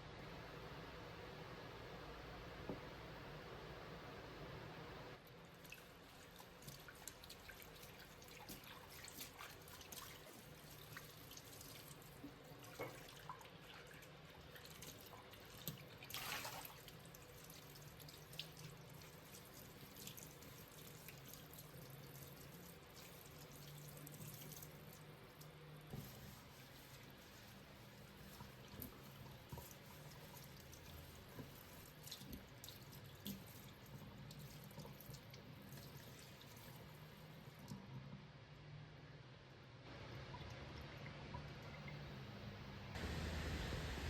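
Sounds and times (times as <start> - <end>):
water dripping at a sink: 5.2 - 27.3, 28.1 - 38.0, 40.1 - 42.2.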